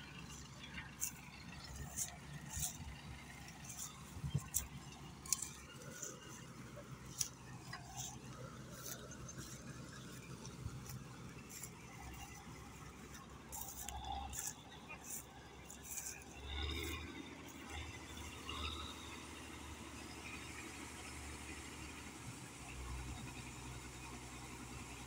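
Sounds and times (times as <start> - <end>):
combine harvester engine drone: 0.0 - 25.0.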